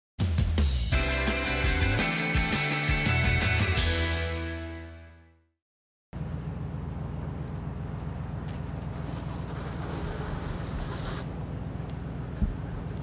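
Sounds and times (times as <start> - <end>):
vehicle rumble: 6.2 - 13.0.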